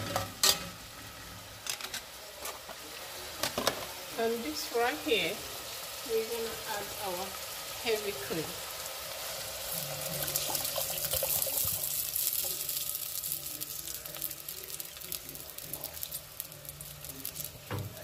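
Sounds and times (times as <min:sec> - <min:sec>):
liquid splashing and sizzling: 0:00.0 - 0:18.0.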